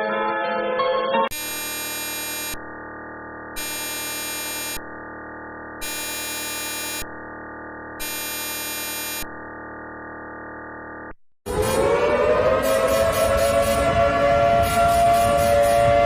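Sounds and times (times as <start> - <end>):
harsh bright buzz: 1.3 - 11.1
synthesized alert buzz: 1.3 - 16.0.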